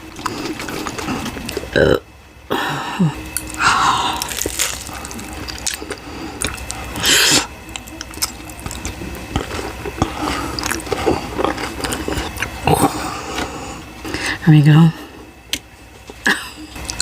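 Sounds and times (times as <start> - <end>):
loud bite: 3.3 - 13.5
wet chewing and lip smacking: 4.2 - 13.6.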